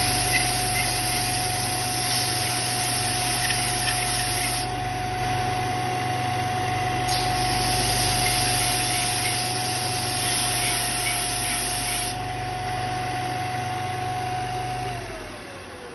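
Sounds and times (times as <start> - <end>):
wood sanding hiss: 0.0 - 4.7, 7.1 - 12.2
sander motor humming and whining: 0.0 - 15.9.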